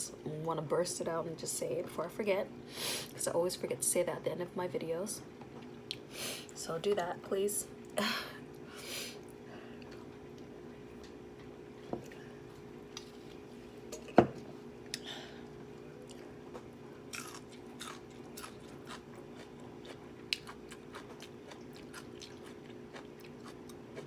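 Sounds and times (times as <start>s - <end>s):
person chewing and biting: 16.0s - 24.0s.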